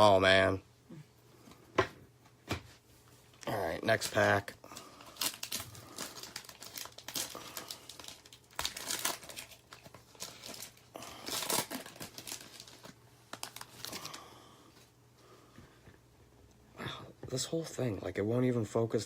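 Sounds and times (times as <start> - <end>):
foil wrapper tearing and crinkling: 4.0 - 14.2.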